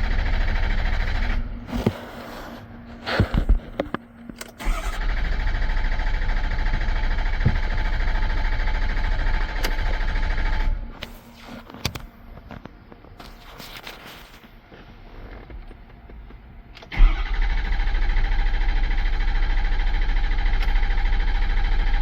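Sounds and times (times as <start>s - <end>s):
starter cranking engine: 0.0s - 2.0s, 3.2s - 10.8s, 16.8s - 22.0s.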